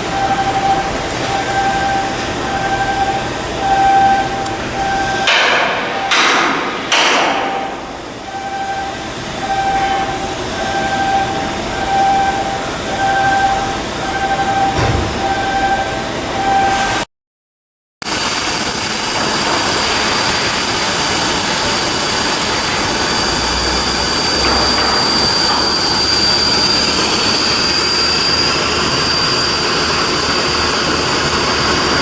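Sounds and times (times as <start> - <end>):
electronic warning beeper: 0.1 - 6.5, 7.3 - 16.8
rushes of work noise: 18.2 - 32.0.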